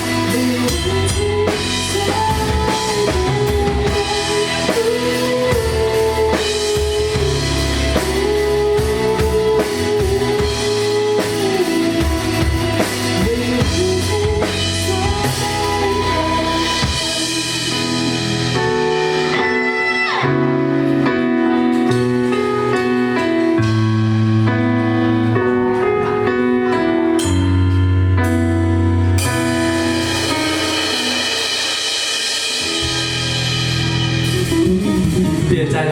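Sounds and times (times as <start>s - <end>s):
bass line: 0.0s - 35.9s
drum kit: 0.0s - 35.9s
electric guitar chords: 0.0s - 35.9s
cymbal crash: 29.3s - 34.4s.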